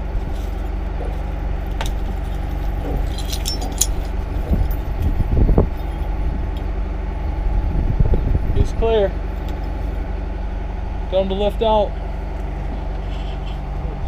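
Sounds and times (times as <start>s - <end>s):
diesel engine running: 0.0s - 14.0s
light metallic clinks: 2.8s - 4.8s.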